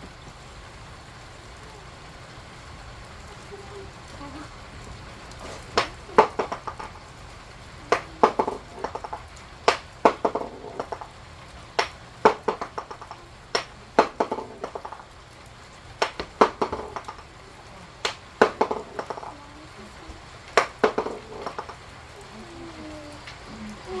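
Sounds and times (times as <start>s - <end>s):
heavy rain hiss: 0.0s - 24.0s.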